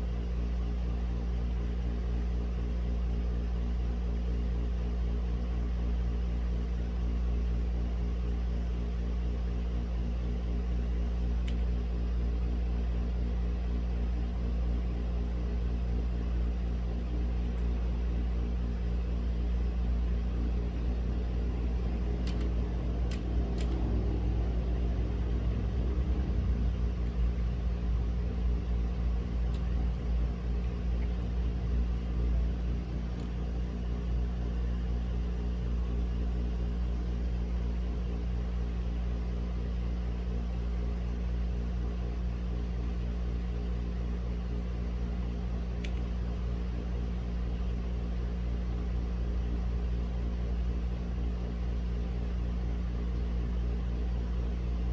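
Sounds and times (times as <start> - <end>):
low mechanical rumble with hum: 0.0 - 54.9
sharp clicks: 21.8 - 23.9.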